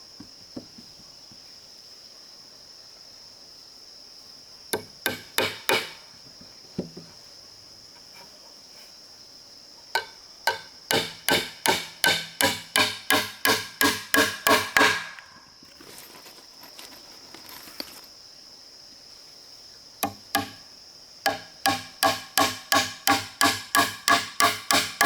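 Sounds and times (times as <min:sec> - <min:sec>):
insects droning: 0:00.0 - 0:25.0
hammering on wood: 0:04.8 - 0:06.0, 0:10.0 - 0:15.2, 0:20.0 - 0:20.6, 0:21.2 - 0:25.0.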